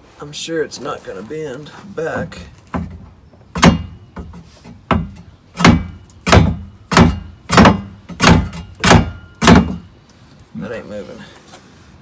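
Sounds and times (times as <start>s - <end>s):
hammer striking metal bolt: 3.6s - 4.3s, 4.9s - 9.9s.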